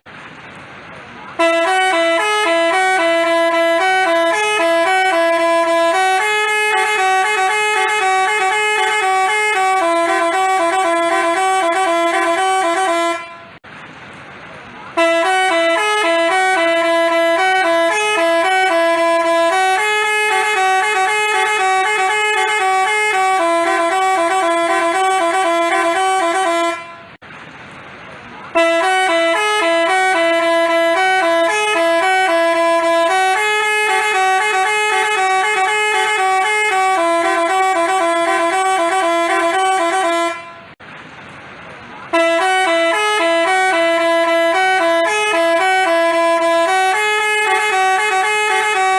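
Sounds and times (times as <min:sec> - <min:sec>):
multi-tone horn playing tune: 0:01.3 - 0:13.6, 0:14.9 - 0:27.2, 0:28.5 - 0:40.8, 0:42.1 - 0:48.9.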